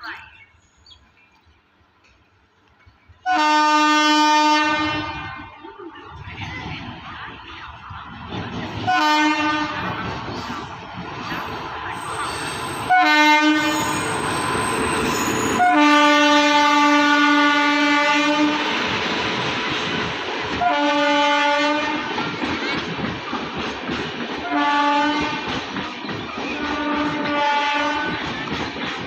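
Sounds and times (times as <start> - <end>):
locomotive horn blasts: 3.3 - 5.4, 8.9 - 9.9, 12.8 - 14.2, 15.4 - 18.6, 20.6 - 22.0, 24.4 - 25.4, 26.6 - 28.1
train wheels clattering on rails: 18.5 - 29.0.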